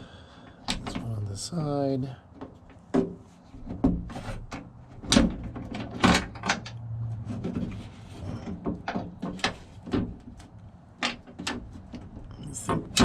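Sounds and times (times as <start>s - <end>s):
tools clicking and knocking on metal: 2.3s - 6.8s, 8.3s - 13.0s.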